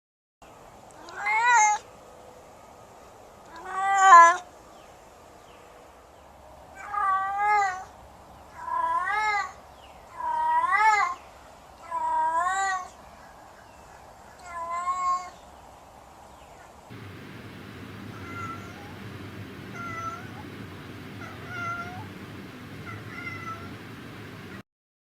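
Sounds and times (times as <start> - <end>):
cat meowing: 18.1 - 18.9, 19.7 - 20.4, 21.2 - 22.1, 22.7 - 23.8.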